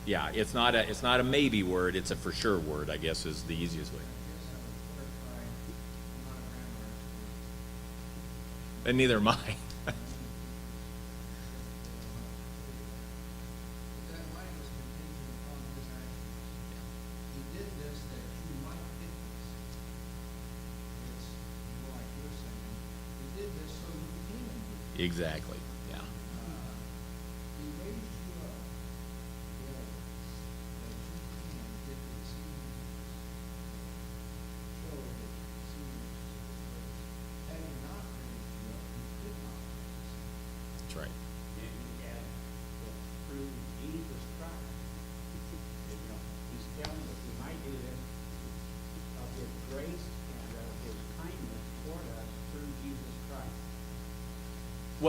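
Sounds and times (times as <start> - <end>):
electrical mains hum: 0.0 - 55.0.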